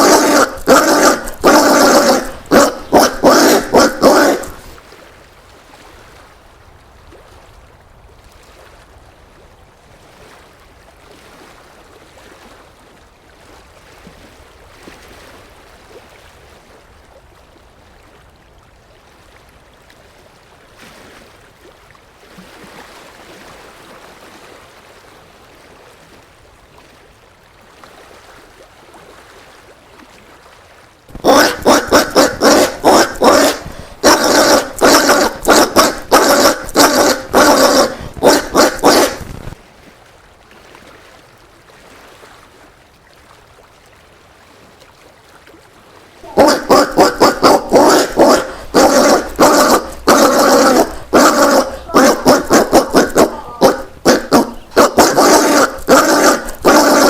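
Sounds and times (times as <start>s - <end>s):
peccary bark-like grunts: 0.0s - 4.8s, 31.1s - 39.5s, 46.2s - 57.0s.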